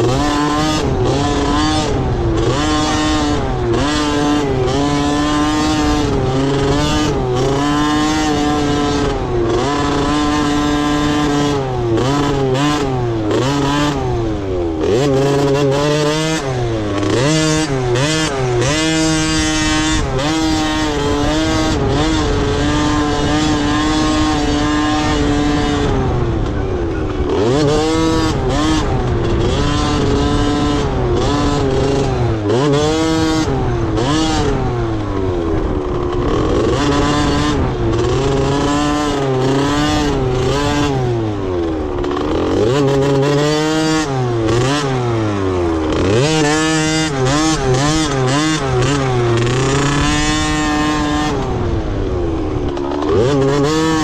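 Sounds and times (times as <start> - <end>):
dirt bike engines revving: 0.0 - 54.0.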